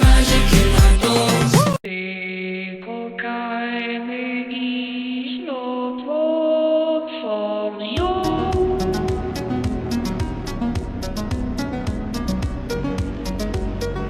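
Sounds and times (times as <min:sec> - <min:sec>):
song with a beat: 0:00.0 - 0:01.9, 0:08.0 - 0:14.0
chant-like chords over low drone: 0:08.0 - 0:14.0.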